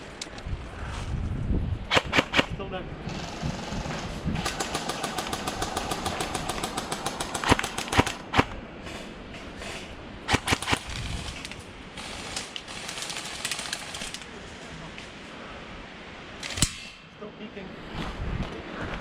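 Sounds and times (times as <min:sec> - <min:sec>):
airsoft gun single shots: 0:01.9 - 0:02.6
airsoft gun full-auto burst: 0:04.4 - 0:08.2, 0:10.3 - 0:11.4.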